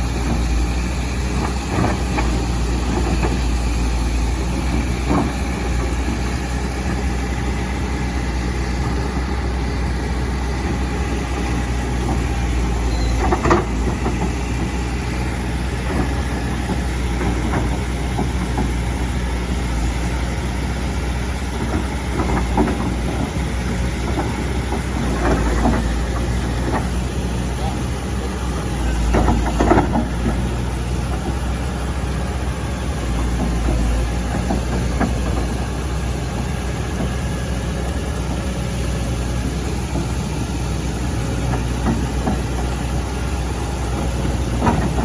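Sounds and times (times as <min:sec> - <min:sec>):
excavator diesel engine running: 0:00.0 - 0:45.0
short knocks: 0:28.8 - 0:31.4.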